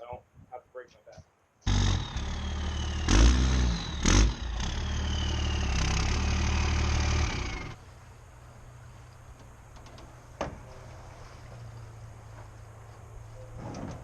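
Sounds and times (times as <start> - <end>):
diesel pickup engine running: 1.7 - 7.8.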